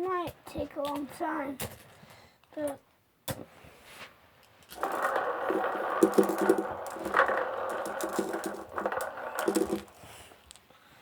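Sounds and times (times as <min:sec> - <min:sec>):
marbles rattling against cardboard: 0:04.7 - 0:10.4.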